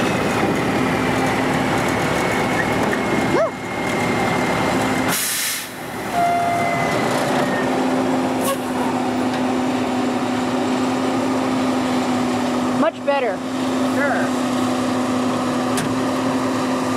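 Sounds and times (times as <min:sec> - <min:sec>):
harvest machinery humming: 0:00.0 - 0:16.9
short hiss: 0:05.1 - 0:05.8.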